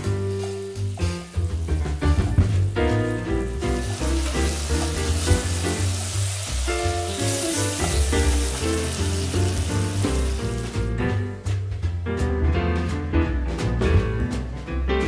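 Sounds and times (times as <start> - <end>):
chicken sizzling in a pan: 0.0 - 11.0
background music with bass: 0.0 - 15.0.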